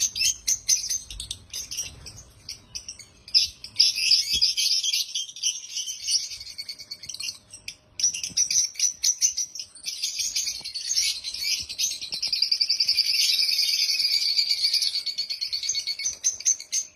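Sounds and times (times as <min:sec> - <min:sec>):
lovebirds chirping: 0:00.0 - 0:16.9.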